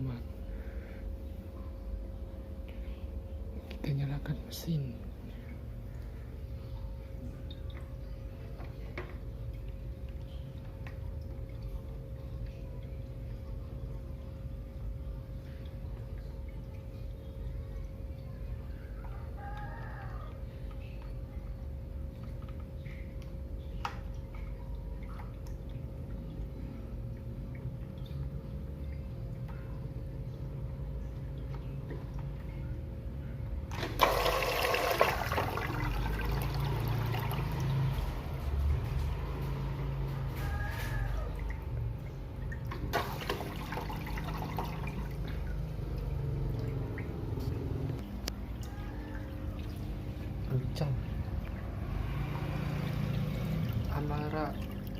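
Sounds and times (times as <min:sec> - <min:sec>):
water pump humming: 0:00.0 - 0:54.9
water splashing and dripping: 0:07.0 - 0:54.9
water pouring and splashing: 0:33.6 - 0:54.9.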